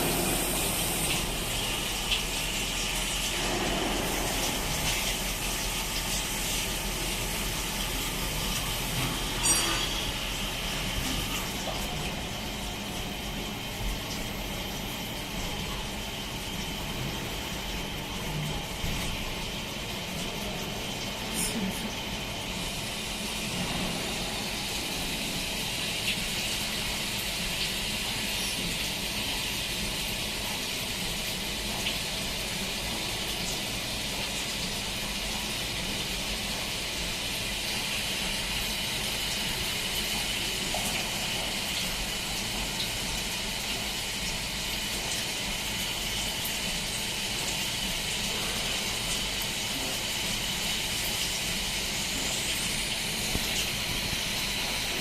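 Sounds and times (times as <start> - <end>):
coolant rushing hiss: 0.0 - 55.0.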